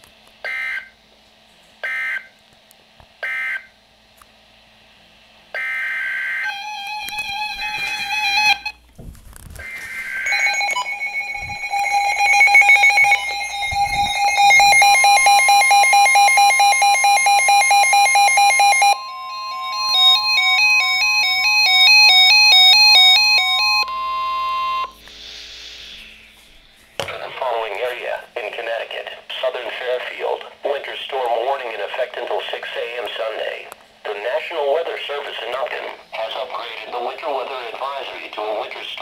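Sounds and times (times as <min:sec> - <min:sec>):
warbling alert tones: 0:09.6 - 0:23.8
fast pulsing beeps: 0:09.6 - 0:25.0
two-tone alternating alert: 0:09.6 - 0:25.0
steady high tone: 0:09.6 - 0:29.0.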